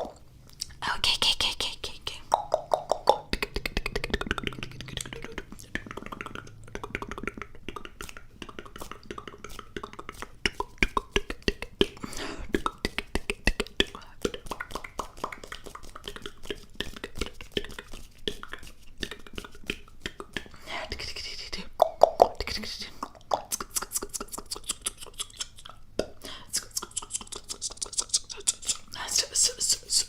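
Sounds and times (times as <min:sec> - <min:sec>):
wet mouth clicks and pops: 0:00.1 - 0:00.8, 0:02.2 - 0:20.6, 0:21.6 - 0:29.0.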